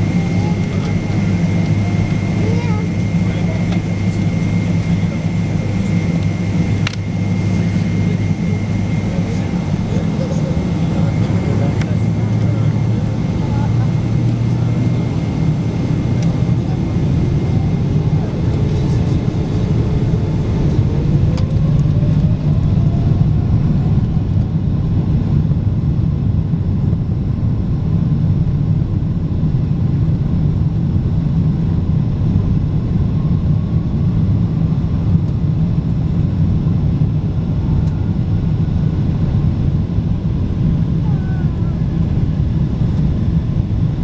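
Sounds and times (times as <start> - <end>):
airliner cabin engine rumble: 0.0 - 44.0.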